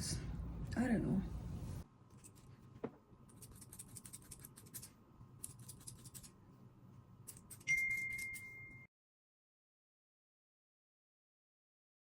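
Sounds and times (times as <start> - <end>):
scratchy scrapes and snips: 3.3 - 6.4, 7.3 - 8.4
ringing tone: 7.7 - 8.9.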